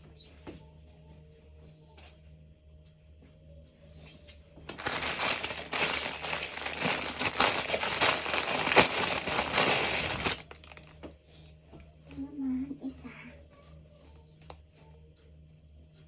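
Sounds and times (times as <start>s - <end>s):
packaging crinkling: 4.7s - 11.0s.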